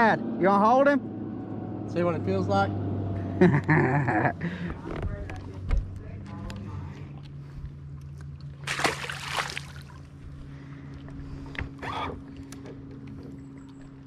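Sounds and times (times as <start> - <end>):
low mechanical hum: 3.2 - 14.0.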